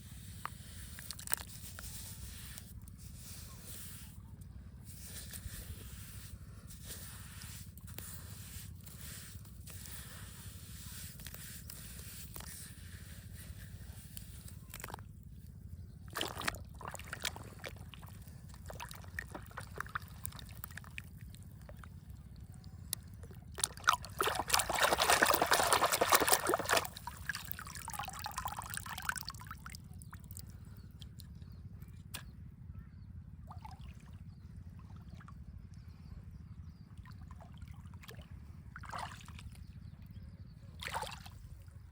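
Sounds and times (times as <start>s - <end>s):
water sloshing and trickling: 0.3s - 3.2s, 7.6s - 31.3s, 33.4s - 35.8s, 36.9s - 39.8s, 40.7s - 41.9s.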